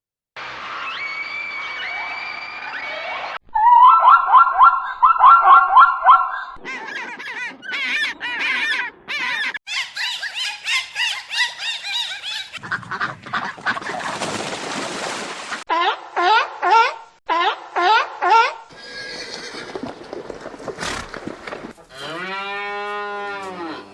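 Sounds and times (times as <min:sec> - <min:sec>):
waterfowl calling: 0:04.7 - 0:15.6.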